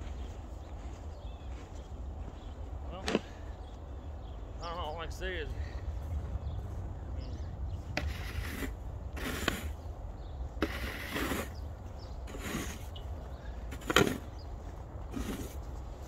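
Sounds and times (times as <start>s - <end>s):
footsteps crunching in snow: 0.0s - 3.8s, 10.6s - 16.0s
steady low rumble: 1.4s - 10.8s.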